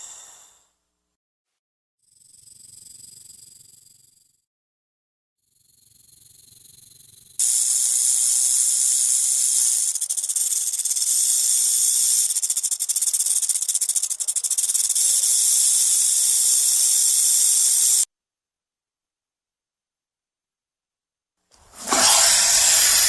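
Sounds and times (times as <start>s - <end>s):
snake hissing: 0.0s - 0.6s, 7.4s - 18.1s, 21.6s - 23.0s.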